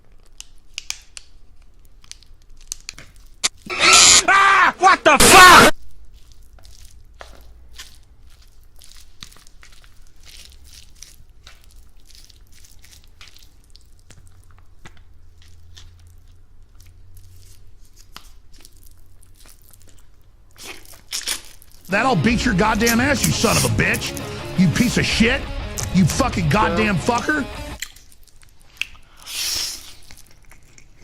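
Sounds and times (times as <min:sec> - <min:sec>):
crunchy chewing: 0:05.7 - 0:21.9, 0:27.8 - 0:31.0
low hum: 0:21.9 - 0:27.8.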